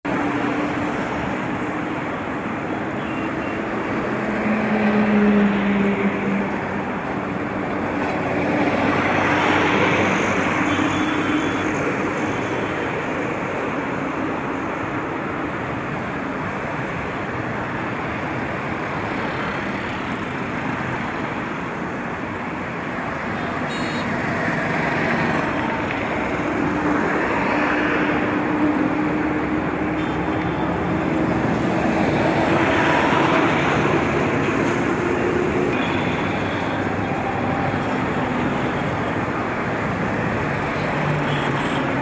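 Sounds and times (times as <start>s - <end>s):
road traffic: 0.0s - 42.0s
engine drone: 23.1s - 42.0s.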